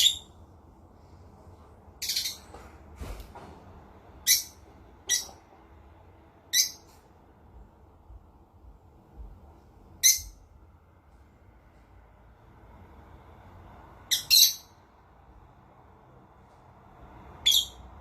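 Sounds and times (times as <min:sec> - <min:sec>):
parrot high-pitched calls: 0:00.0 - 0:00.4, 0:02.0 - 0:02.5, 0:04.2 - 0:05.4, 0:06.5 - 0:06.9, 0:10.0 - 0:10.4, 0:14.0 - 0:14.8, 0:17.4 - 0:18.0.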